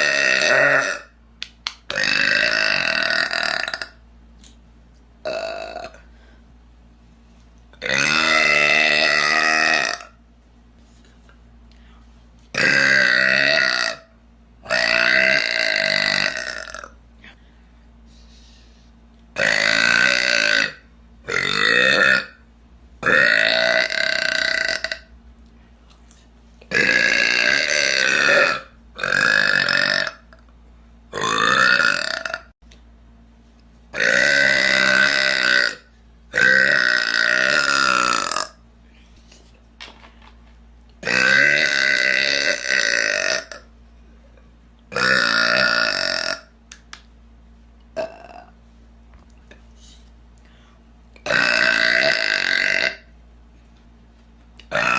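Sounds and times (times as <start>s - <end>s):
woman burping loudly: 0.0s - 1.2s, 1.9s - 4.0s, 5.2s - 6.1s, 7.8s - 10.2s, 12.6s - 14.1s, 14.7s - 17.0s, 19.4s - 22.4s, 23.0s - 25.1s, 26.7s - 30.4s, 31.1s - 32.5s, 34.0s - 35.8s, 36.4s - 38.6s, 41.0s - 43.7s, 44.9s - 46.5s, 48.0s - 48.6s, 51.2s - 53.1s, 54.7s - 54.9s.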